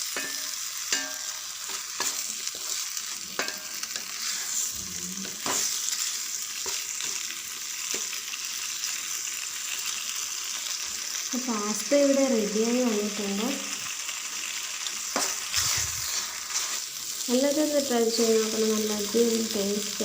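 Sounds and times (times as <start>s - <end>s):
food sizzling in a pan: 0.0s - 20.0s
utensil scraping and tapping pan: 0.2s - 2.8s, 3.4s - 4.1s.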